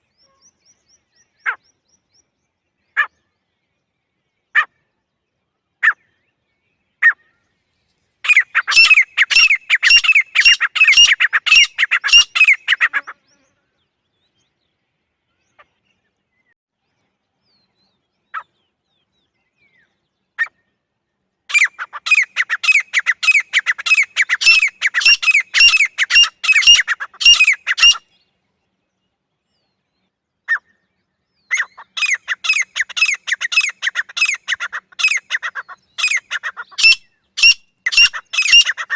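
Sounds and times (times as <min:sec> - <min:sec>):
francolin calling: 0:08.2 - 0:13.2, 0:21.5 - 0:28.0, 0:31.5 - 0:38.9.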